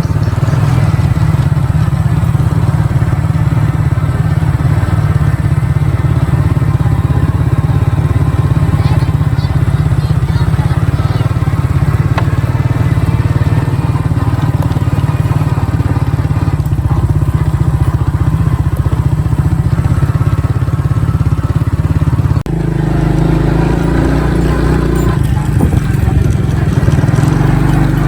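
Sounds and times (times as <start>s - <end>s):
small engine running: 0.0s - 28.0s.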